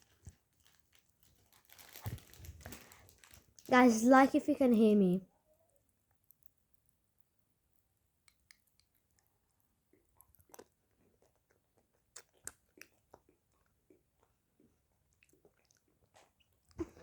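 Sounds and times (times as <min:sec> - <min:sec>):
chewing and crunching: 0:00.0 - 0:03.7, 0:07.8 - 0:17.0
popping candy crackles: 0:00.0 - 0:04.9, 0:05.7 - 0:17.0.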